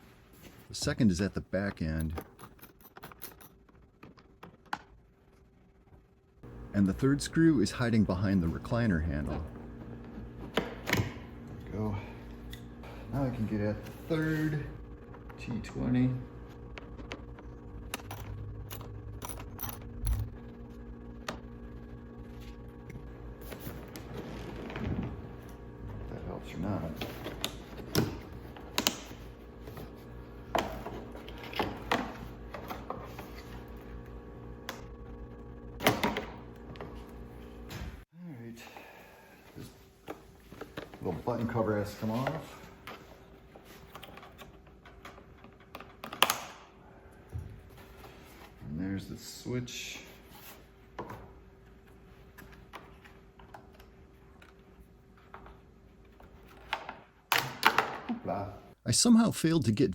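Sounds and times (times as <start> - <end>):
steady low hum: 6.4 - 35.8.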